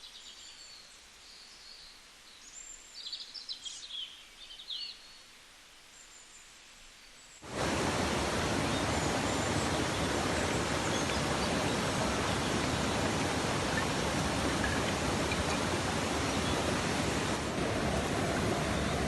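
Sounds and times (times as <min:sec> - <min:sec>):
waterfall rushing: 0:07.4 - 0:19.0
bird chirping: 0:08.7 - 0:17.0.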